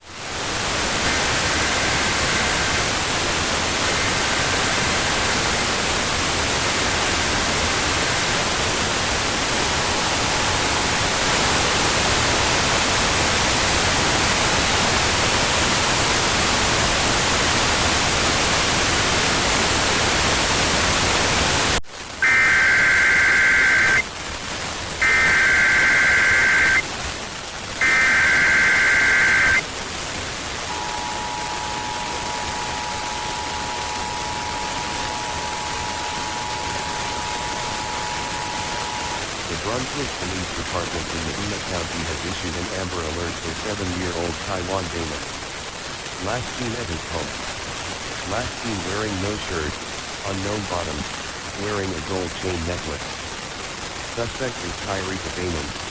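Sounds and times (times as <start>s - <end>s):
radio static hiss: 0.0s - 55.9s
two-tone data bursts: 0.8s - 3.1s, 9.5s - 11.4s, 22.2s - 24.1s, 25.0s - 26.9s, 27.8s - 29.7s, 30.6s - 39.3s
loud data tones: 0.8s - 3.2s, 9.5s - 11.8s, 22.2s - 24.1s, 25.0s - 26.9s, 27.8s - 29.7s, 30.6s - 39.9s.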